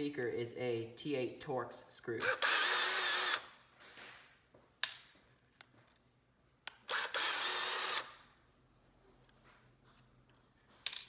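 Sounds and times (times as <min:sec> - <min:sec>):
power driver running: 0:02.2 - 0:03.5, 0:06.9 - 0:08.2.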